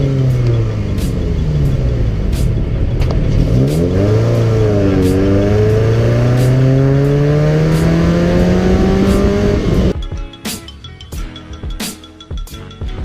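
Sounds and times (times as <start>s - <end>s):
car engine accelerating: 0.0s - 10.0s.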